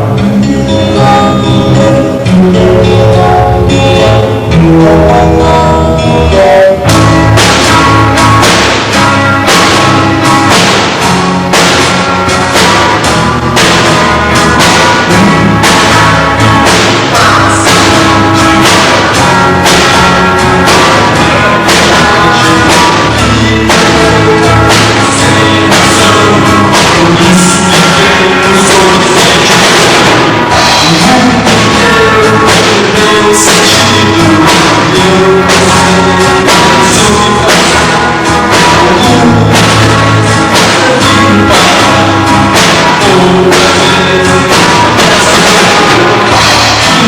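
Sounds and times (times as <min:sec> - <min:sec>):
band playing live: 0:00.0 - 0:47.0
drum kit steady beat: 0:00.0 - 0:47.0.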